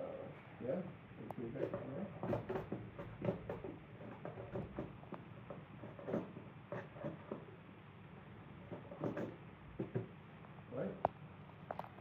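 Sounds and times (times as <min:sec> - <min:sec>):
plastic parts knocking and clicking: 0:01.6 - 0:07.5, 0:08.6 - 0:10.2.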